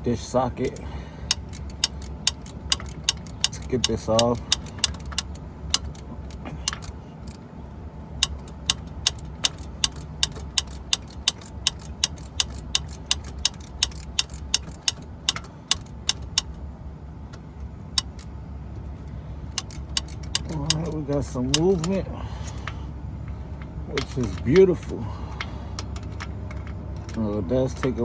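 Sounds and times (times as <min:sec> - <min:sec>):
hand ratchet clicking: 0:00.0 - 0:07.4, 0:08.2 - 0:16.5, 0:18.0 - 0:18.3, 0:19.6 - 0:22.6.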